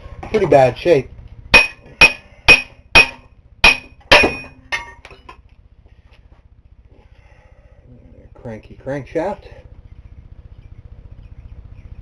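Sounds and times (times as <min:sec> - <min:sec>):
hammer striking metal: 0:01.5 - 0:05.1.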